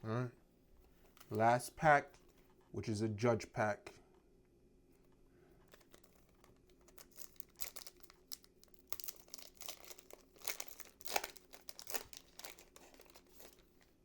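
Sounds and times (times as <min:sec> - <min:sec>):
foil pack tearing and crinkling: 0:05.7 - 0:13.8.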